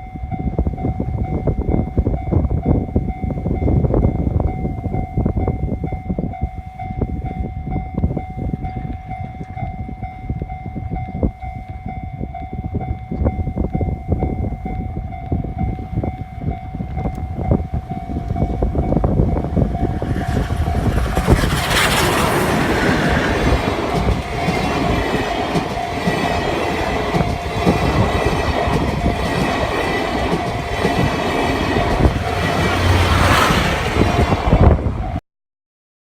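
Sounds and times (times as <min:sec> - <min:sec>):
level crossing warning tone: 0:00.0 - 0:35.2
train wheels clattering on rails: 0:15.6 - 0:35.0
steam locomotive rushing past: 0:16.8 - 0:35.2.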